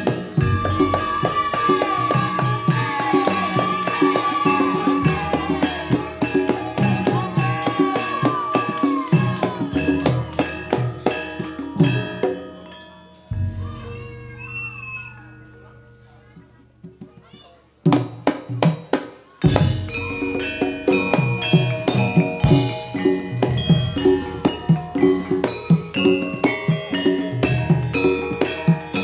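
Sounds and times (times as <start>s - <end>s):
fast hand-drum strokes: 0.0s - 12.6s, 13.3s - 15.4s, 17.9s - 29.0s
held wavering melody line: 0.0s - 16.9s, 19.5s - 29.0s
low ringing gong stroke: 13.3s - 16.9s.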